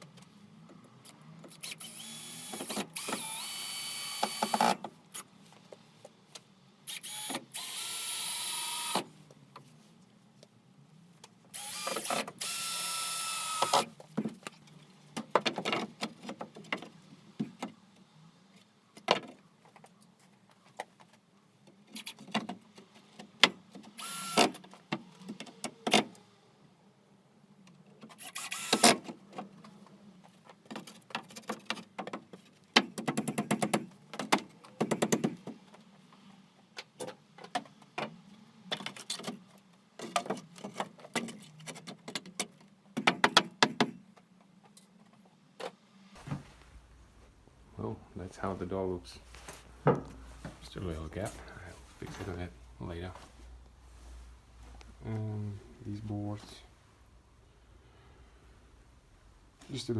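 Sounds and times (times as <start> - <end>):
power drill running: 1.6 - 4.7, 11.6 - 13.8, 24.0 - 24.5
handling knocks and clatter: 49.3 - 53.6.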